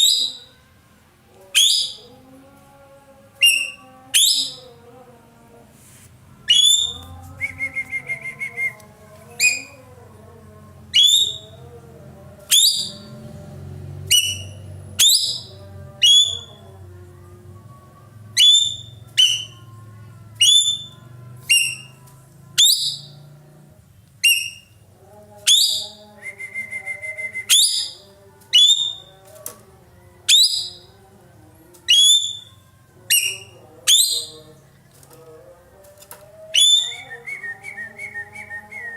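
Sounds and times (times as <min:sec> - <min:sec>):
songbird whistled notes: 0:00.0 - 0:00.5, 0:06.5 - 0:08.8, 0:36.6 - 0:38.9
songbird rapid trill: 0:25.4 - 0:29.2.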